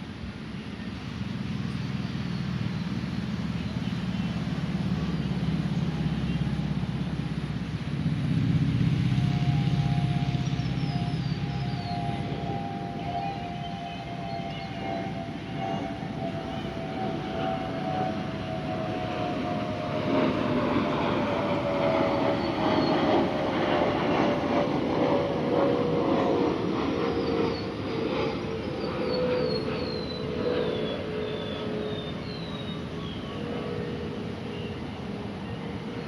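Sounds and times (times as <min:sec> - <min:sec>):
birds chirping: 0:00.9 - 0:36.0
vehicle passing: 0:01.8 - 0:28.6
two-note whine sliding down: 0:08.7 - 0:26.6.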